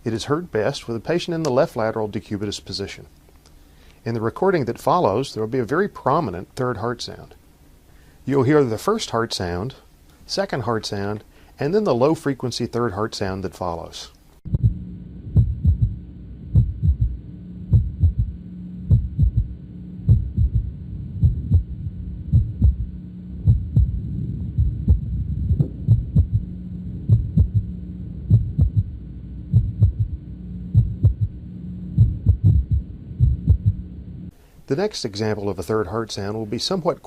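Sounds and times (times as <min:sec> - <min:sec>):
heartbeat through stethoscope: 0:14.5 - 0:33.9.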